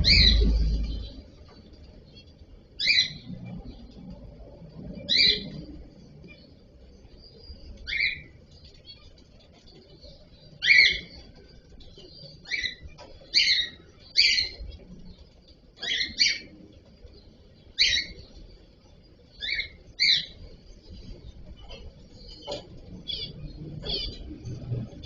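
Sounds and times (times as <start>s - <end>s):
cockatiels chirping: 0.0s - 1.2s, 2.8s - 3.3s, 5.1s - 5.7s, 7.4s - 11.4s, 12.0s - 15.2s, 15.8s - 16.6s, 17.7s - 18.3s, 19.3s - 20.5s, 21.5s - 24.3s.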